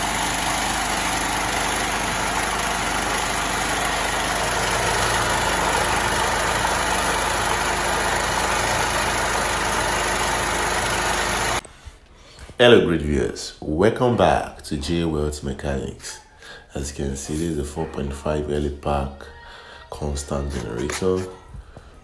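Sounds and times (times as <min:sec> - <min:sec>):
generator engine running: 0:00.0 - 0:11.6.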